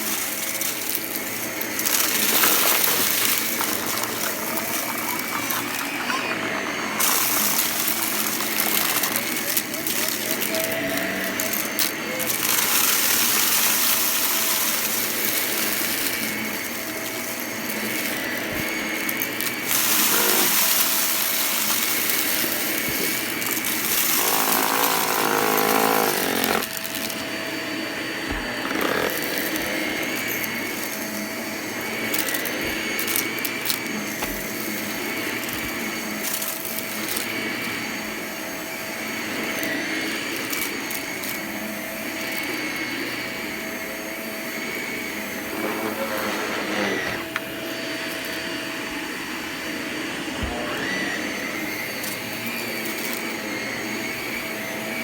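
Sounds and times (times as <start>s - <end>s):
debris crackling in vacuum: 0.0s - 27.3s
rough whirr: 0.0s - 36.4s, 44.6s - 47.6s
vacuum cleaner running: 0.0s - 55.0s.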